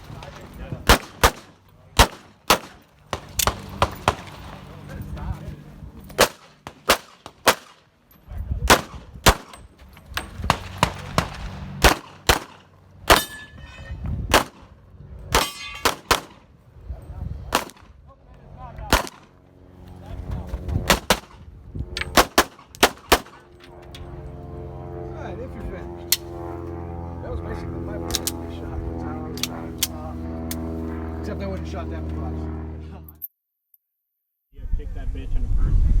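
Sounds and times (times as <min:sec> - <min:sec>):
pistol shots: 0:00.8 - 0:04.5, 0:06.2 - 0:07.8, 0:08.7 - 0:09.6, 0:10.2 - 0:13.4, 0:14.3 - 0:14.7, 0:15.3 - 0:16.4, 0:17.5 - 0:17.9, 0:18.9 - 0:19.3, 0:20.8 - 0:21.4, 0:22.0 - 0:23.4
steel target ringing: 0:13.1 - 0:14.0, 0:15.3 - 0:16.1.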